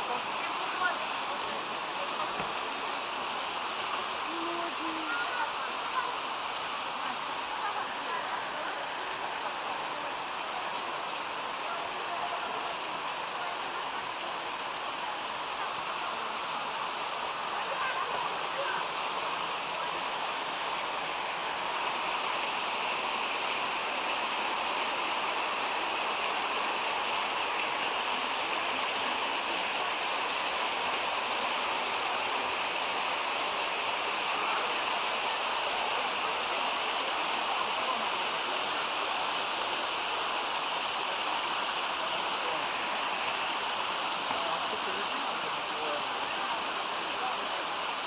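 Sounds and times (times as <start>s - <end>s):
stream rushing over waterfalls: 0.0s - 48.0s.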